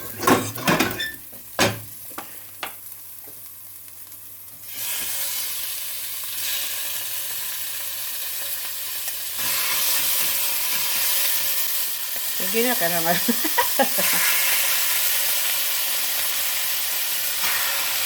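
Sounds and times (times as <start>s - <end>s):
chicken sizzling in oil: 1.1s - 18.0s.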